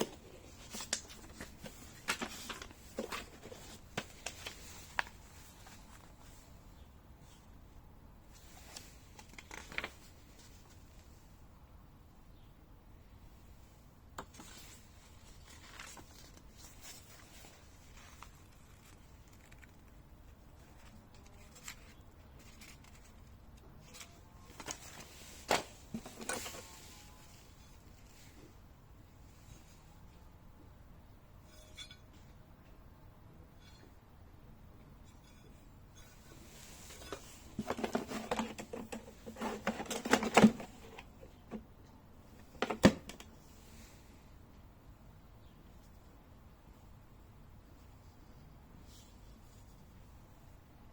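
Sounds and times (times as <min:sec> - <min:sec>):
hard items clattering: 0:24.5 - 0:26.8, 0:36.1 - 0:41.7, 0:42.4 - 0:43.2
packaging rustling: 0:36.9 - 0:41.1.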